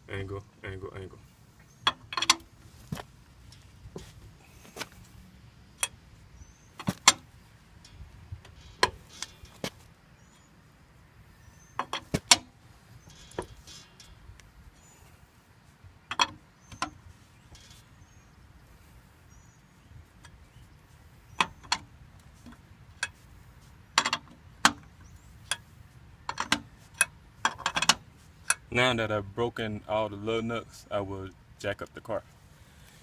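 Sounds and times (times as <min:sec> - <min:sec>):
lug wrench clicking on lug nuts: 0:01.8 - 0:02.5, 0:11.7 - 0:14.4, 0:16.1 - 0:17.9, 0:23.9 - 0:28.7.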